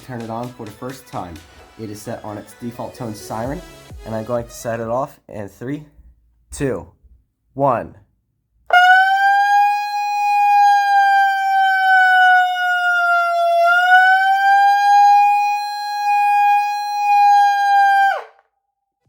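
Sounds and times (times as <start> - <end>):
electronic horn siren tone: 8.7 - 18.3.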